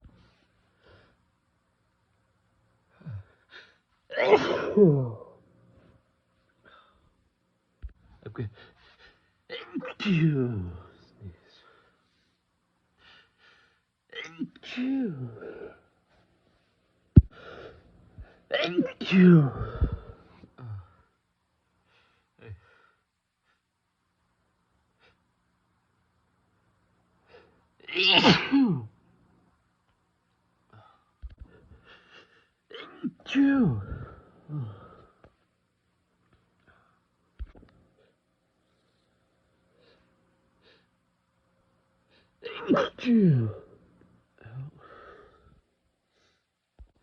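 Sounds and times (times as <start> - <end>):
person sneezing: 4.1 - 5.3, 27.9 - 28.9, 42.4 - 43.8.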